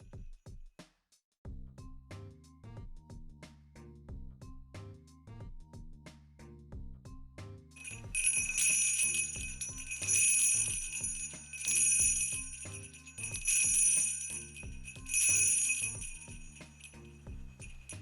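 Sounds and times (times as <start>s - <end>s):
soft background music with beat: 1.5s - 18.0s
sleigh bells jingling: 7.8s - 18.0s.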